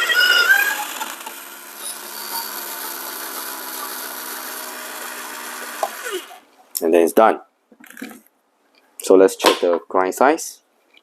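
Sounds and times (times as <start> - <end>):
coffee grinder motor hum: 0.0 - 6.5.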